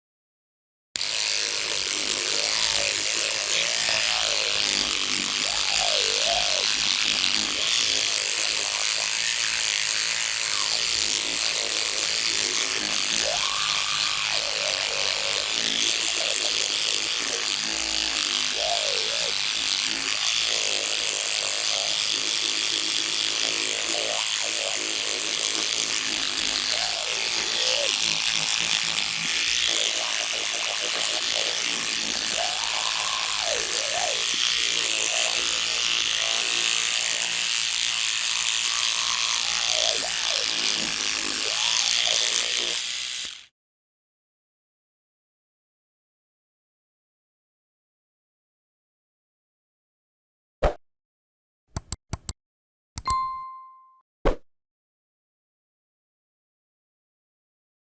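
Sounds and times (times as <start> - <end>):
electric toothbrush buzzing: 1.0 - 43.5.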